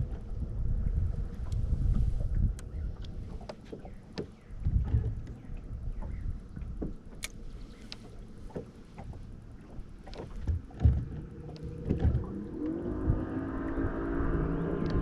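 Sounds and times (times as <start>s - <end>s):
low rumble: 0.0s - 15.0s
multi-pitched hum: 0.0s - 15.0s
knocks and thumps: 10.0s - 12.3s.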